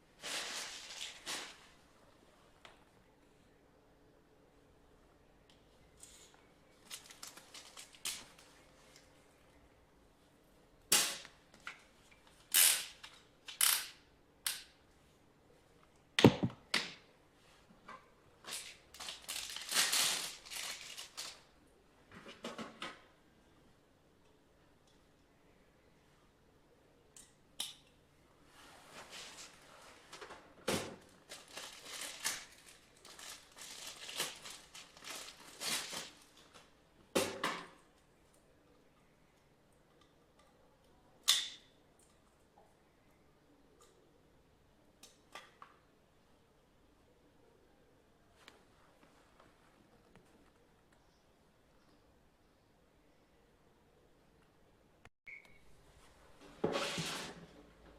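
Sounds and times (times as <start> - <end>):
crinkling and rustling handling: 0.1 - 2.9, 5.5 - 9.6, 17.3 - 23.1, 28.4 - 37.0.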